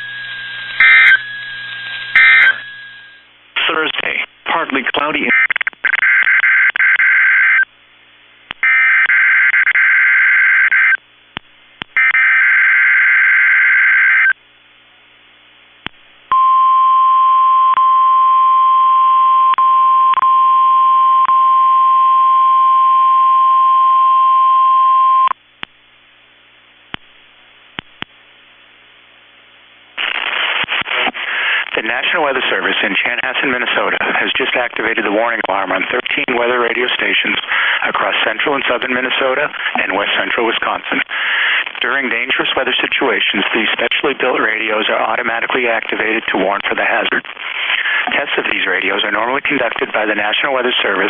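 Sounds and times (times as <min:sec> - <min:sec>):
buzzy digital data bursts: 0:00.0 - 0:03.2
steady warning alarm tone: 0:00.0 - 0:03.2
faint static clicks: 0:00.0 - 0:12.2, 0:14.1 - 0:16.4, 0:25.3 - 0:51.0.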